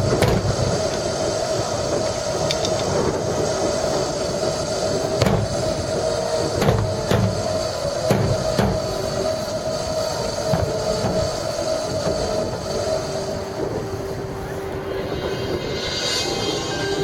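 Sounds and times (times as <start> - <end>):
wind rumble on microphone: 0.0 - 17.0
marching band sustained note: 3.2 - 17.0.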